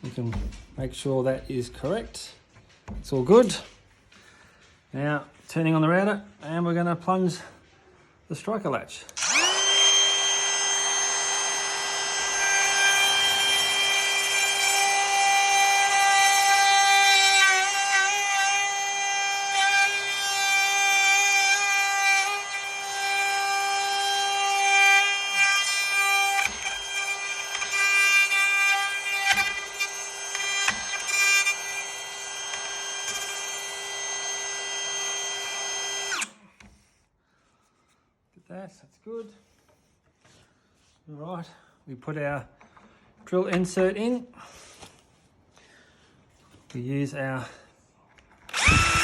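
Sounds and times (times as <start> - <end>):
knocks: 0.1 - 1.0, 2.7 - 3.4
router whining while cutting wood: 9.2 - 36.7, 48.5 - 49.0.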